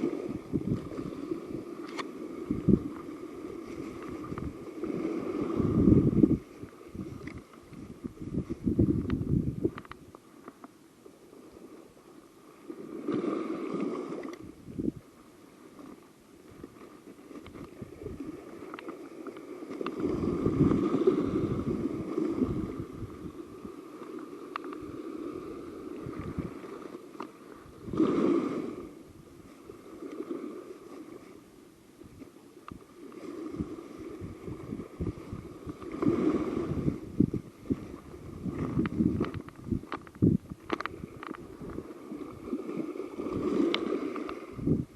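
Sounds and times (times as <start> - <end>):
wind gusting on microphone: 0.0 - 10.0, 14.4 - 15.1, 17.5 - 18.6, 19.9 - 23.8, 24.8 - 26.8, 27.6 - 29.8, 33.2 - 44.9.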